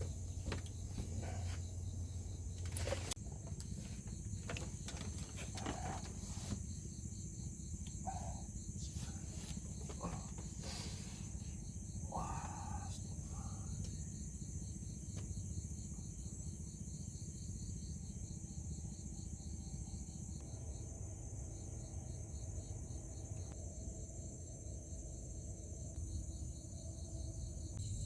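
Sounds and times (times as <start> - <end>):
insects chirping: 0.0 - 28.0
high-pitched insect drone: 6.7 - 24.7.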